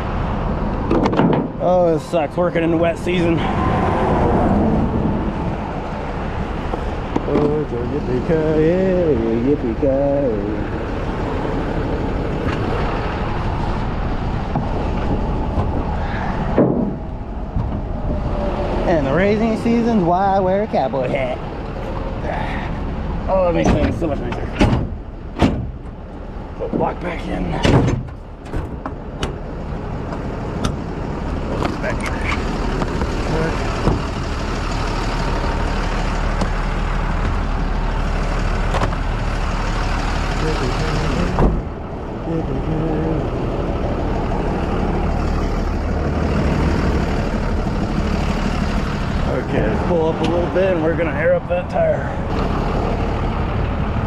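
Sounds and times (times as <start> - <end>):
highway traffic passing: 0.0 - 54.0
truck engine idling: 0.0 - 54.0.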